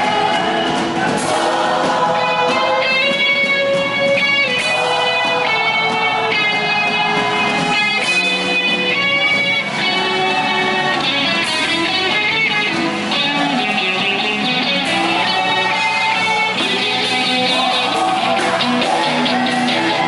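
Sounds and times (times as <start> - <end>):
worship music: 0.0 - 20.0.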